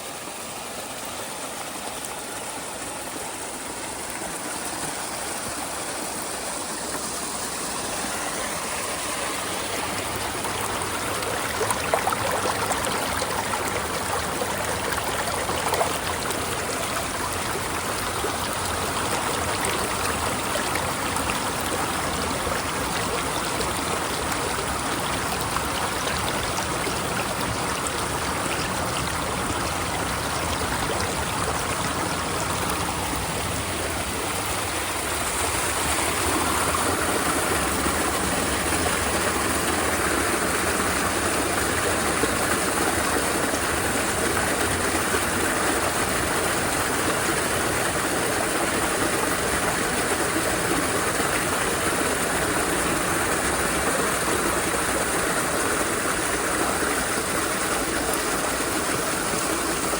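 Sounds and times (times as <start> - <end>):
running water rushing: 0.0 - 59.9.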